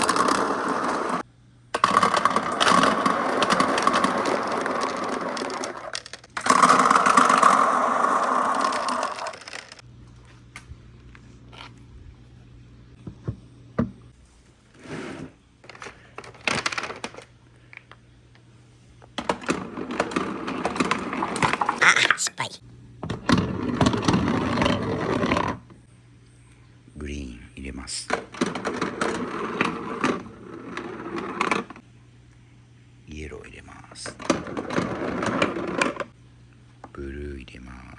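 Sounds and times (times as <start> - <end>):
marbles clacking against track: 0.0 - 1.2, 1.8 - 9.8
marbles rolling on wooden track: 0.0 - 1.2, 1.8 - 9.8, 19.2 - 21.9, 23.2 - 25.6, 28.1 - 31.8, 34.1 - 36.1.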